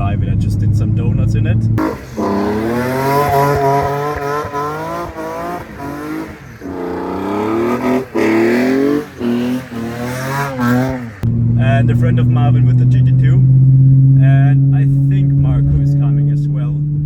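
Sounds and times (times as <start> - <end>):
sports car engine accelerating: 0.0 - 17.0.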